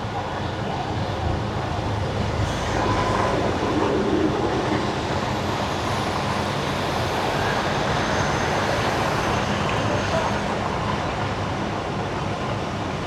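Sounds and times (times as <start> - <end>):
tyres hissing on wet road: 2.0 - 12.4.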